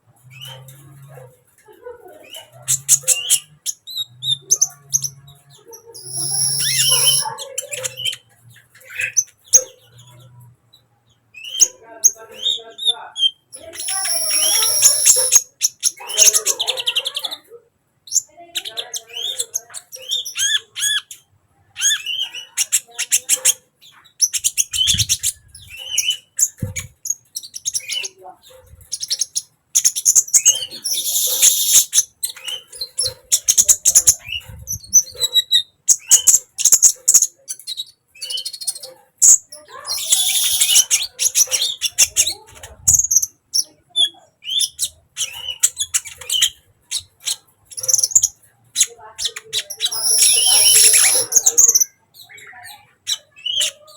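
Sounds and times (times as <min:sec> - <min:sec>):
sunbird singing: 0:02.4 - 0:08.2, 0:11.4 - 0:16.6, 0:30.2 - 0:32.7, 0:39.6 - 0:42.4, 0:49.4 - 0:52.4.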